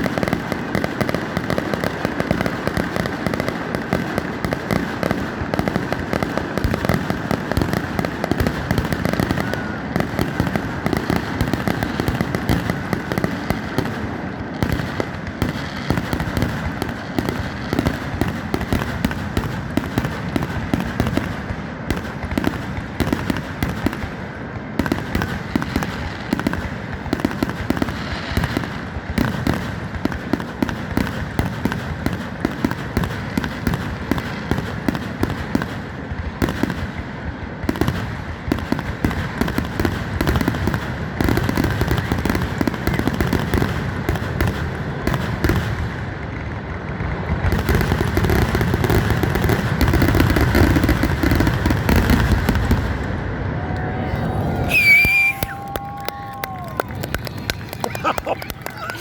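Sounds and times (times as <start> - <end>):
fireworks bursting and crackling: 0.0 - 59.0.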